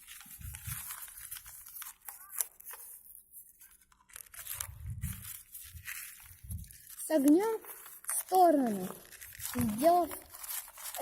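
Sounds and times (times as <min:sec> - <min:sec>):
paper rustling and crackling: 0:00.0 - 0:11.0.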